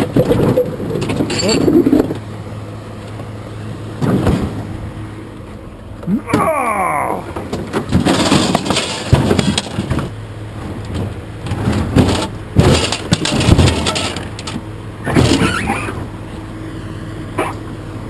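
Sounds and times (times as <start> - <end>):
scrap metal clanking and scraping: 0.0 - 2.3, 7.3 - 16.0
engine hum: 0.0 - 18.0.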